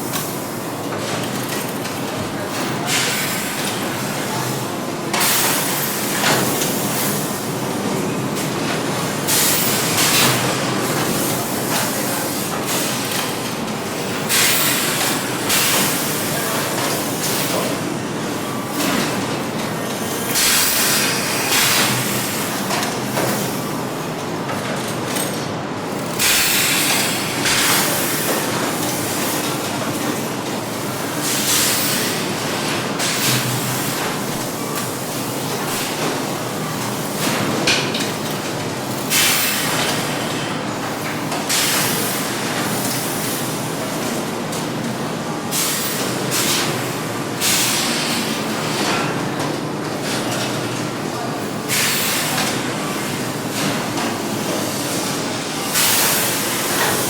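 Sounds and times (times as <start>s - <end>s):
factory machinery running: 0.0s - 57.0s
machine hissing and clattering: 8.4s - 13.5s, 14.2s - 17.7s, 19.9s - 24.1s, 26.0s - 40.7s, 41.4s - 44.7s, 45.5s - 49.2s, 51.6s - 57.0s.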